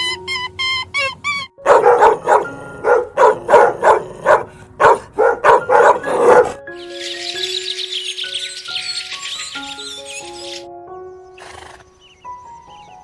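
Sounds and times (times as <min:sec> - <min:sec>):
soft background music: 0:00.0 - 0:13.0
dog barking: 0:01.6 - 0:06.6
horse whinnying: 0:11.4 - 0:11.9.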